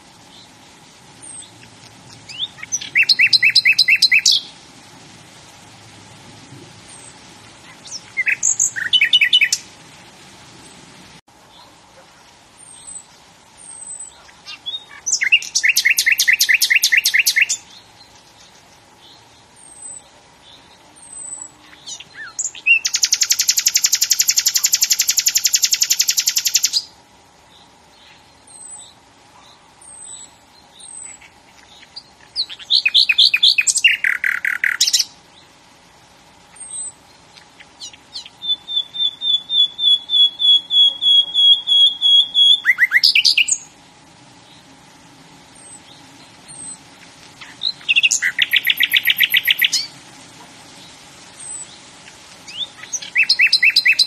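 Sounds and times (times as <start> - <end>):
bird singing fast trills: 2.1 - 4.5, 6.9 - 9.7, 12.6 - 17.8, 19.0 - 26.9, 29.8 - 35.1, 36.5 - 43.7, 47.4 - 49.9, 52.5 - 54.0
short high bird chirps: 37.8 - 43.6, 47.4 - 49.9.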